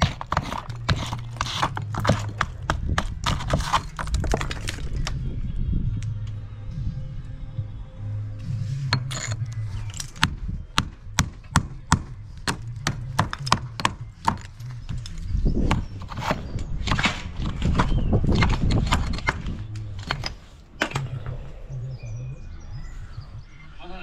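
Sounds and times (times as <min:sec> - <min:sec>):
scraping and rattling: 0:00.0 - 0:05.2, 0:08.8 - 0:10.2.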